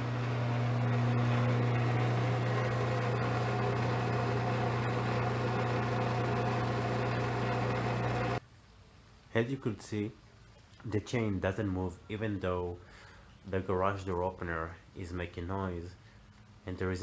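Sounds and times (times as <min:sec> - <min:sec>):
garage door opener motor humming: 0:00.0 - 0:08.4.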